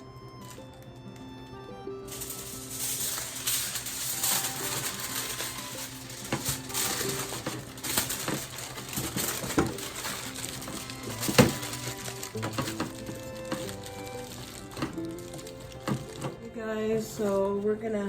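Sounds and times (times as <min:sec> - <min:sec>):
aluminium foil crinkling: 0:00.0 - 0:18.0
soft background music: 0:00.0 - 0:18.0.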